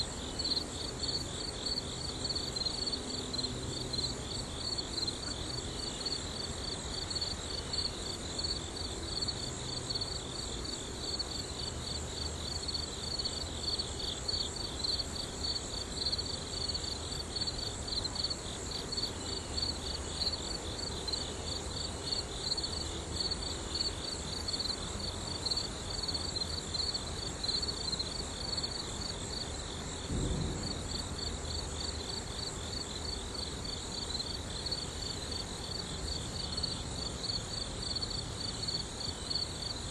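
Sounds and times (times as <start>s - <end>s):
crickets trilling: 0.0s - 39.9s
low thump: 30.1s - 31.1s.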